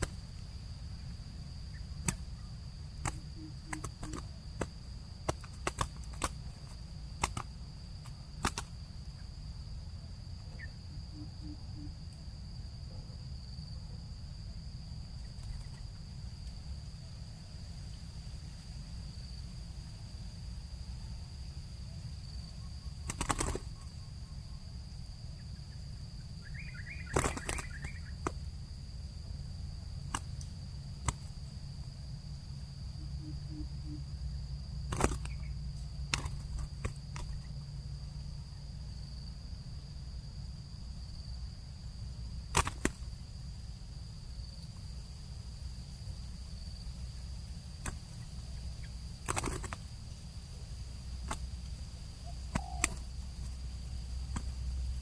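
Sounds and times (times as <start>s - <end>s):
high insect drone: 0.0s - 55.0s
dove cooing: 52.2s - 53.1s
high bird call: 52.3s - 53.1s.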